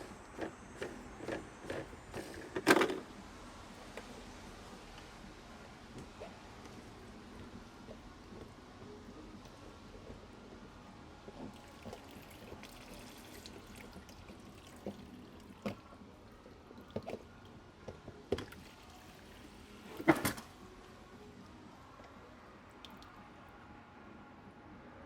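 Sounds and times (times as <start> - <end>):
plastic parts clicking and knocking: 0.3 - 3.1
water trickling and dripping: 11.4 - 17.6, 22.8 - 23.2.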